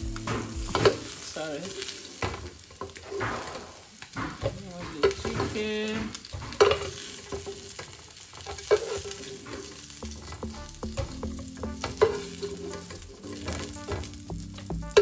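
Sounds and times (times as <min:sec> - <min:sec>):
chicken sizzling in hot oil: 0:00.0 - 0:15.0.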